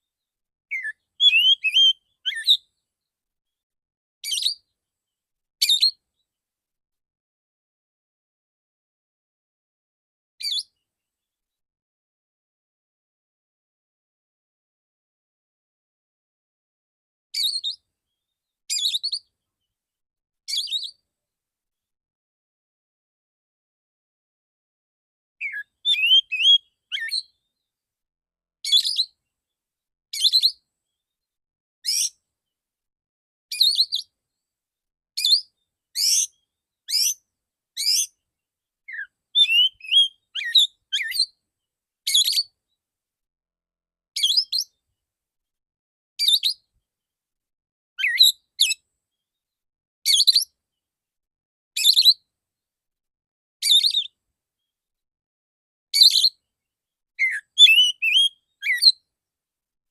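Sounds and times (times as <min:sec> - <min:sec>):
bird singing high sharp phrases: 0:00.7 - 0:02.7, 0:04.2 - 0:04.7, 0:05.6 - 0:06.0, 0:10.4 - 0:10.8, 0:17.4 - 0:17.8, 0:18.7 - 0:19.3, 0:20.5 - 0:21.0, 0:25.4 - 0:27.4, 0:28.6 - 0:29.2, 0:30.2 - 0:30.6, 0:31.8 - 0:32.2, 0:33.5 - 0:34.2, 0:35.2 - 0:37.2, 0:37.8 - 0:38.2, 0:38.9 - 0:41.4, 0:42.1 - 0:42.6, 0:44.2 - 0:44.8, 0:46.2 - 0:46.7, 0:48.0 - 0:48.8, 0:50.1 - 0:50.6, 0:51.8 - 0:52.2, 0:53.6 - 0:54.2, 0:56.0 - 0:56.4, 0:57.2 - 0:59.0.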